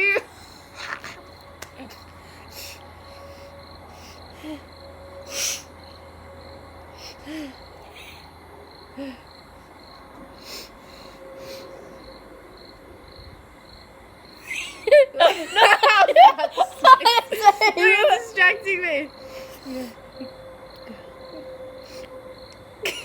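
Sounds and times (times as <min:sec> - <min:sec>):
person sniffing hard: 0:05.3 - 0:05.7
laughter: 0:14.4 - 0:18.3.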